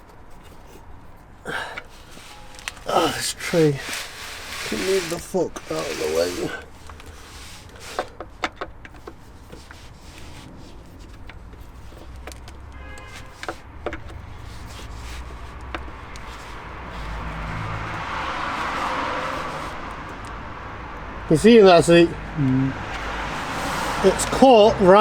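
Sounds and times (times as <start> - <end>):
broad rushing noise: 1.5 - 8.1, 14.2 - 25.0.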